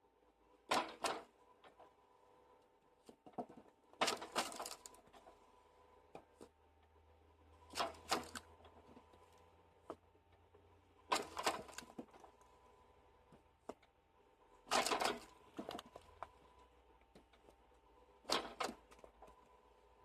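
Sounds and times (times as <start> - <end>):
faint steady hum: 0.0 - 20.0
firewood cutting machine clattering: 0.7 - 1.8, 3.3 - 5.3, 7.7 - 9.1, 11.1 - 12.4, 14.6 - 16.3, 18.2 - 19.4.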